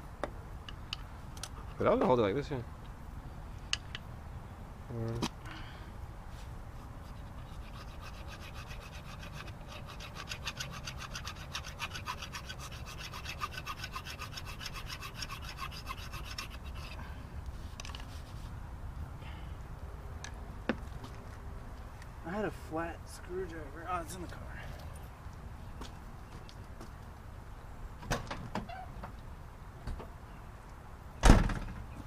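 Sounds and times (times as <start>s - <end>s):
low steady background noise: 0.0s - 32.0s
tool rasping: 7.0s - 17.0s.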